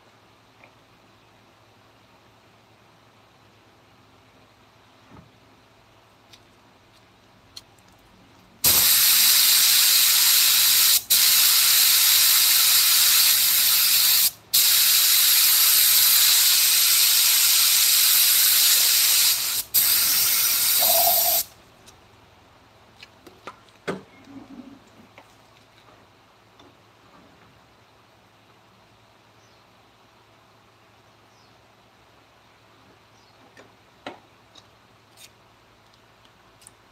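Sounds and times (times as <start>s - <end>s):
compressed air hissing: 8.6s - 21.5s.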